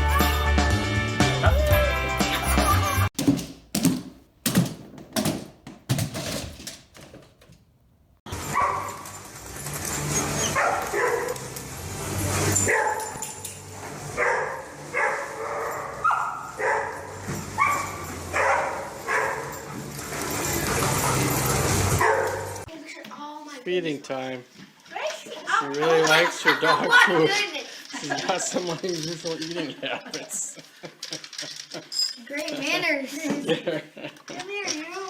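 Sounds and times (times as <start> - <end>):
dog barking: 8.5 - 9.0, 10.6 - 11.4, 12.7 - 13.2, 14.2 - 19.5, 22.0 - 22.5.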